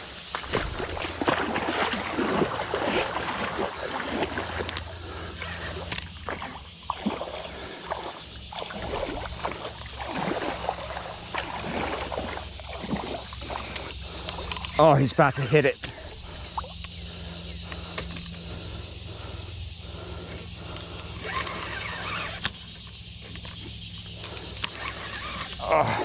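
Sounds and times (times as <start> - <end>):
steady low rumble: 0.0 - 21.2
water splashing and sloshing: 0.0 - 26.0.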